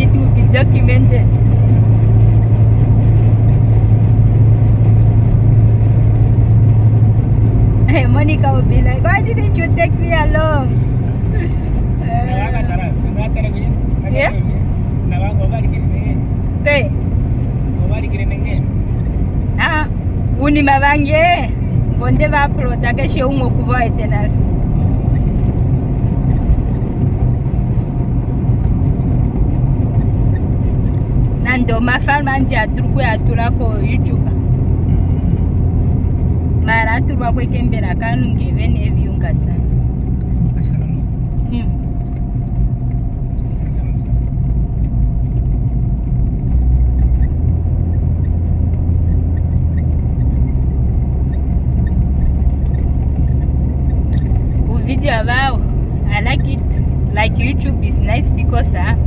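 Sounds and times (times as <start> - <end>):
car engine and road noise: 0.0 - 59.0.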